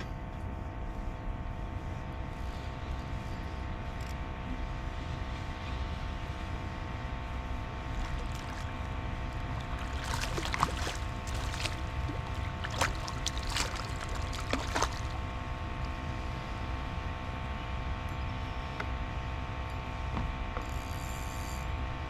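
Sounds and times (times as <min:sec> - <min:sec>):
boat motor humming: 0:06.1 - 0:17.4.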